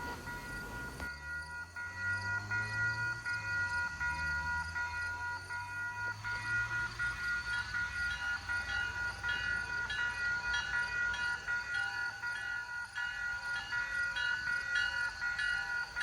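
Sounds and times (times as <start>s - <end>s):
crossing warning bell ringing: 0.0s - 16.0s
locomotive rumble: 0.0s - 16.0s.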